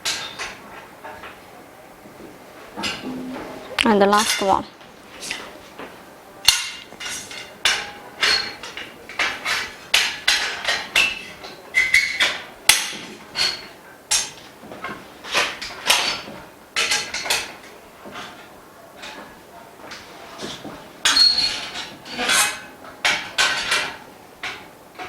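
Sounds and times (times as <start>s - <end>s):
metal frame bars knocking: 2.8s - 4.6s, 19.0s - 25.0s.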